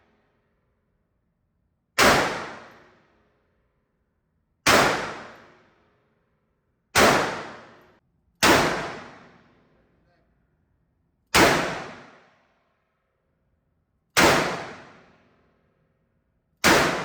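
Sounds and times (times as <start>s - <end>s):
rifle single shots: 2.0s - 2.9s, 4.7s - 5.6s, 7.0s - 7.8s, 8.4s - 9.4s, 11.3s - 12.3s, 14.2s - 15.1s, 16.6s - 17.0s.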